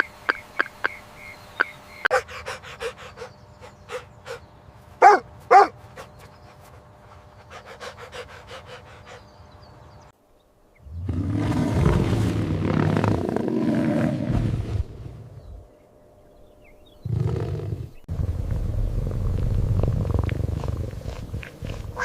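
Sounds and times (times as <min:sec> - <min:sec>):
dog barking: 0:02.1 - 0:04.4, 0:05.0 - 0:06.1
dog panting: 0:02.1 - 0:09.6.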